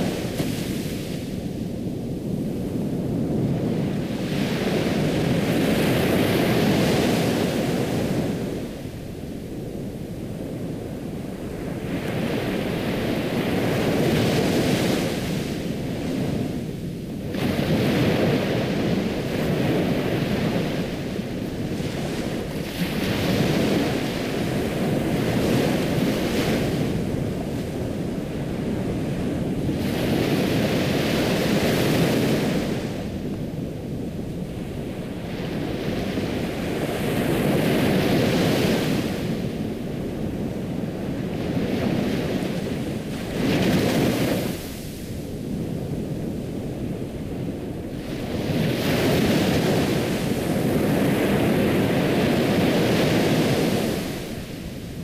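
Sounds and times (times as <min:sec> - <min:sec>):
ocean waves washing onto shore: 0:00.0 - 0:55.0.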